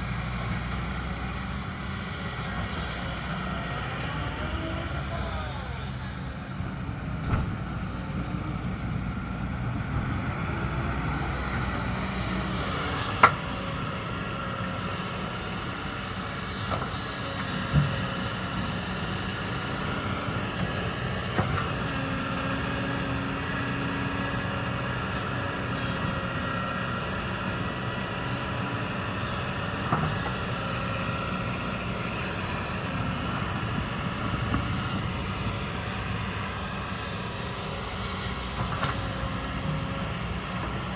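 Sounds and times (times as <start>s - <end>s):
excavator diesel engine running: 0.0s - 40.9s.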